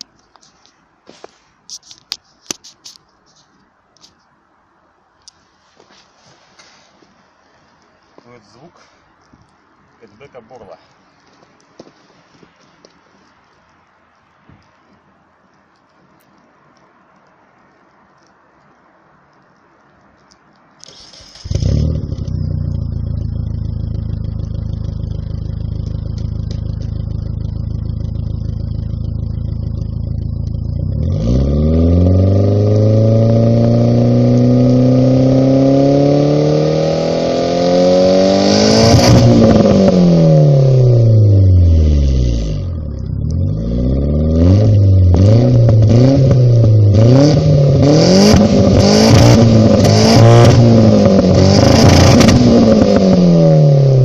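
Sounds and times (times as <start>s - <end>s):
car engine idling and revving: 20.2s - 54.0s.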